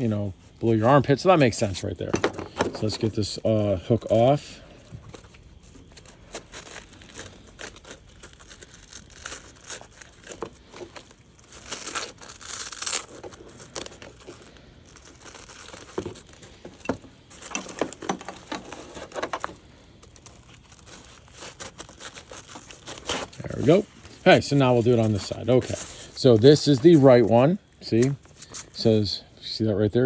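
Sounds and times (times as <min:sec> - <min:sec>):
fabric rustling: 0:02.1 - 0:29.0
velcro tearing: 0:05.2 - 0:16.5, 0:17.4 - 0:27.3.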